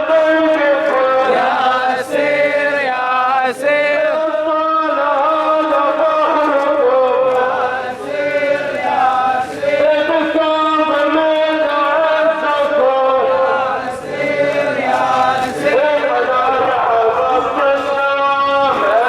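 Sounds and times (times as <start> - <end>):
crowd chanting in unison: 0.0 - 19.0.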